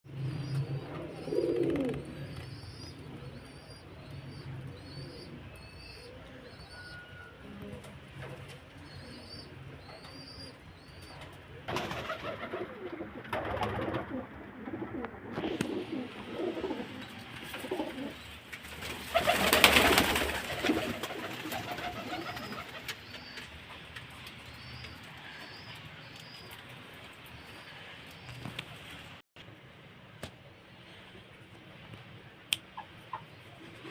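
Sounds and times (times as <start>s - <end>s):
small birds chirping: 0.1s - 7.3s, 8.4s - 11.6s, 19.1s - 29.2s
pigeons cooing: 0.1s - 23.5s.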